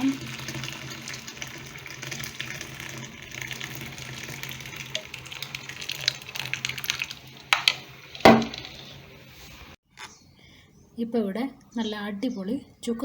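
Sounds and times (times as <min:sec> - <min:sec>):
coffee pouring into steel cup: 0:00.0 - 0:09.1.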